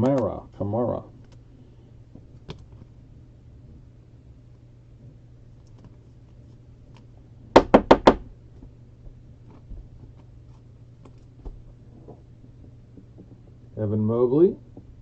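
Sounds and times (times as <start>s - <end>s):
loud knocks: 7.5s - 8.3s.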